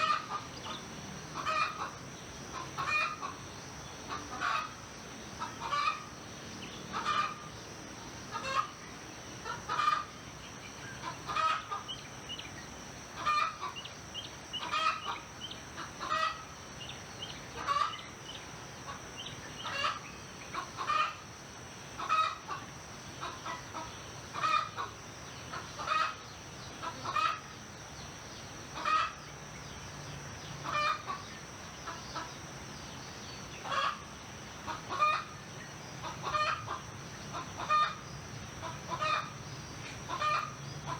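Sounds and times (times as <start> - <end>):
steady high-pitched hum: 0.0 - 40.9
chickens clucking: 1.4 - 1.9, 2.6 - 3.4, 4.1 - 4.8, 5.4 - 6.1, 6.9 - 7.4, 8.3 - 8.7, 9.4 - 10.1, 11.0 - 12.0, 13.2 - 13.8, 14.6 - 16.4, 17.6 - 18.0, 18.8 - 21.2, 22.0 - 22.6, 23.2 - 26.2, 26.8 - 27.4, 28.8 - 29.2, 30.6 - 31.3, 33.6 - 34.0, 34.7 - 35.3, 36.0 - 38.0, 38.6 - 39.3, 40.0 - 40.9.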